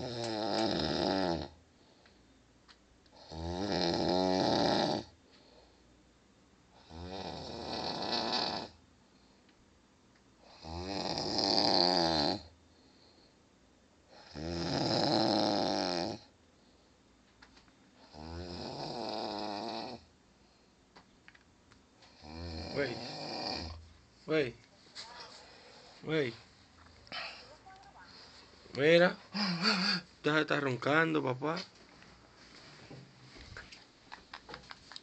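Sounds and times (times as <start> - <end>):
man snoring: 0.0 - 1.6, 3.2 - 5.2, 6.8 - 8.8, 10.4 - 12.5, 14.1 - 16.3, 18.0 - 20.1, 22.1 - 23.8.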